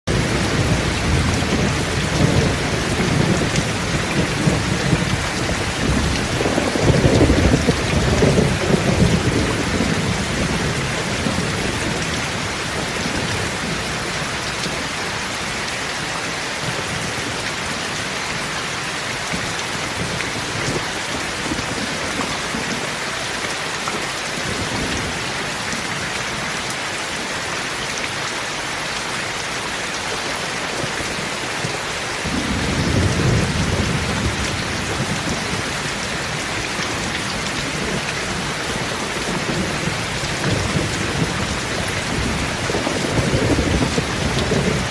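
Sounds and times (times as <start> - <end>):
heavy rain on a tin roof: 0.0 - 44.9
thunder rumbling: 0.1 - 14.4, 32.2 - 44.9.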